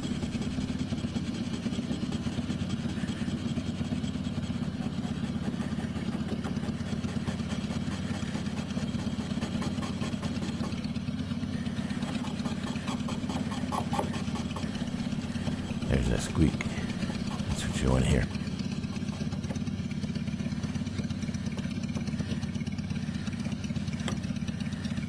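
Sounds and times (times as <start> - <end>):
chrome squeaking: 11.5 - 19.8
power polisher humming: 11.6 - 24.8.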